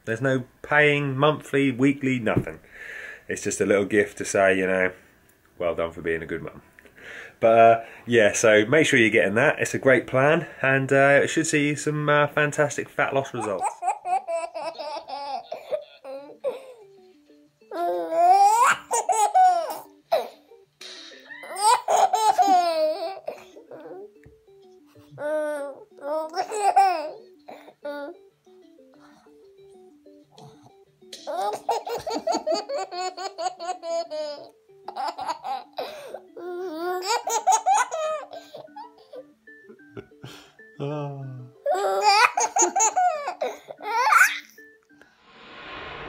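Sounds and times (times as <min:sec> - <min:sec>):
quiet background music: 0:00.0 - 0:46.0.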